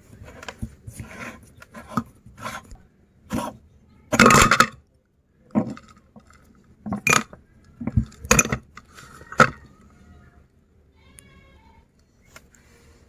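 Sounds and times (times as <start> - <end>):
hard candy cracking in grinder: 5.5 - 9.6.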